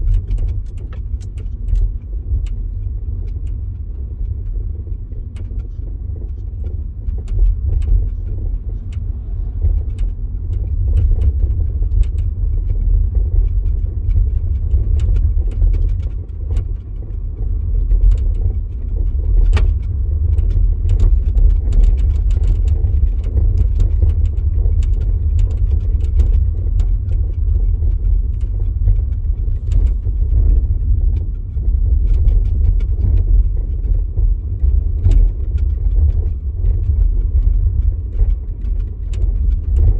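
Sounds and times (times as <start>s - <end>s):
car driving rumble: 0.0s - 39.9s
sharp clicks and knocks: 0.0s - 39.9s.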